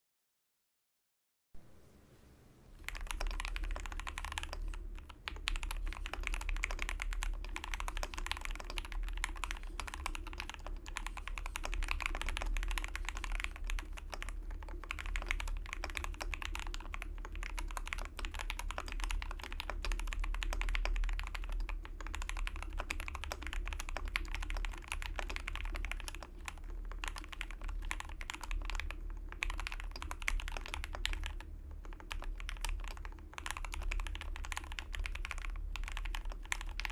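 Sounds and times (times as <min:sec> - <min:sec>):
steady low hum: 0:01.6 - 0:36.9
mechanical keyboard typing: 0:02.8 - 0:36.9.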